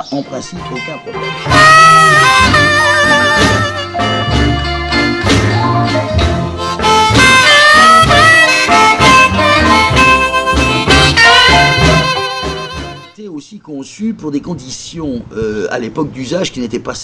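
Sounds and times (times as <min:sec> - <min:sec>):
band accompaniment: 0:00.3 - 0:13.2
blues harmonica lead: 0:00.3 - 0:13.2.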